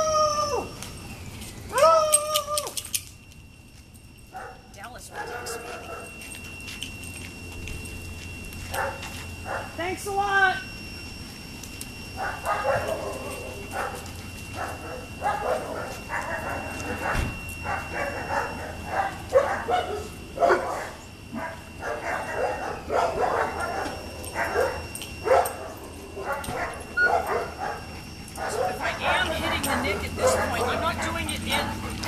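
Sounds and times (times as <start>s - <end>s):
dogs barking: 4.3s - 6.3s, 8.7s - 9.8s, 12.2s - 32.0s.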